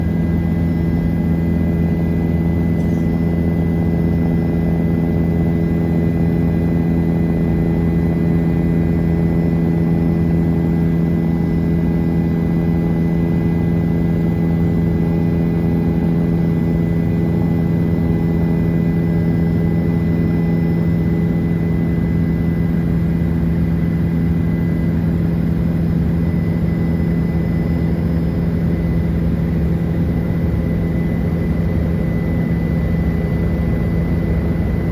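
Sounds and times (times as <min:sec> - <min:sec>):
faint high whine: 0:00.0 - 0:34.9
helicopter running: 0:00.0 - 0:34.9.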